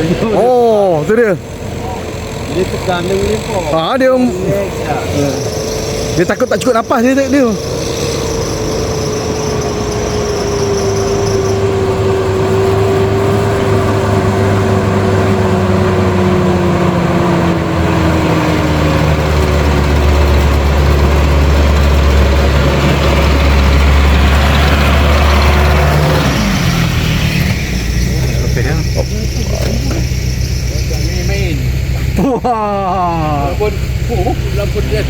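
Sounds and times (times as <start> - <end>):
vehicle engine running under load: 0.0 - 35.0
deep low hum: 12.2 - 35.0.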